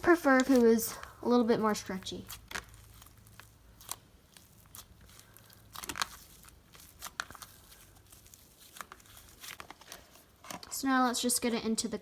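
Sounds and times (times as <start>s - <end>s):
slime squished by hand: 0.0s - 10.4s.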